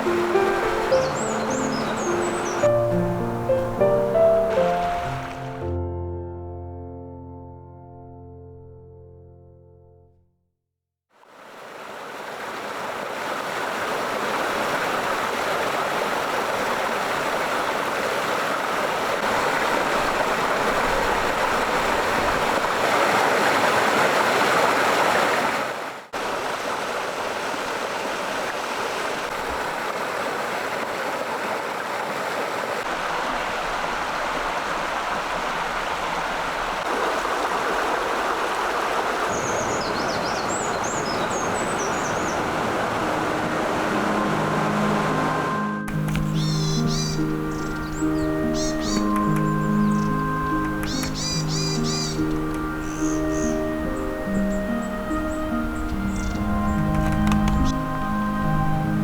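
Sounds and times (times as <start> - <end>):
running water: 0.0 - 5.8, 11.2 - 59.0
short high bird chirps: 46.2 - 53.6.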